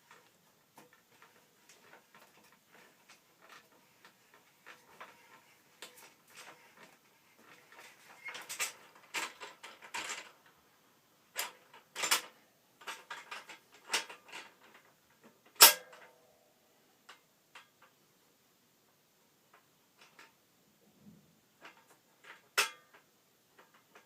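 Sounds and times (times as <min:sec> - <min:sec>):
sharp metallic clank: 0:15.6 - 0:16.0.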